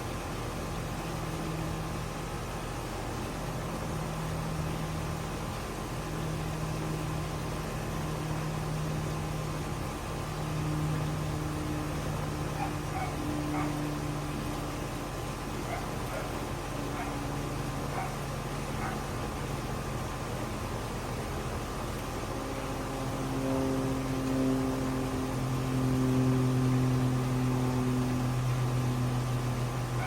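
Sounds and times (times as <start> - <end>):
heat pump humming: 0.0 - 30.0.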